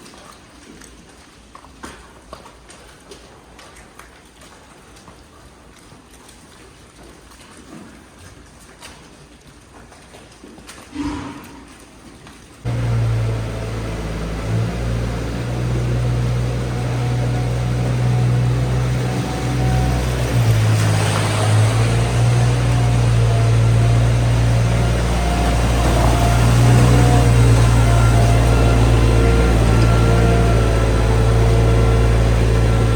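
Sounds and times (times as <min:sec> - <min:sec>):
farm machine engine running: 0:12.7 - 0:32.9.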